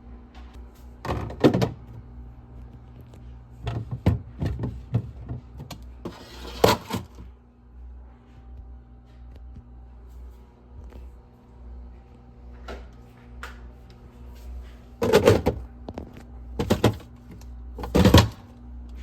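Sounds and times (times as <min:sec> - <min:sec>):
steady hum: 0:00.0 - 0:19.0
plastic bins scraping and knocking: 0:03.6 - 0:07.2, 0:15.0 - 0:15.6, 0:16.6 - 0:17.1, 0:17.8 - 0:18.4.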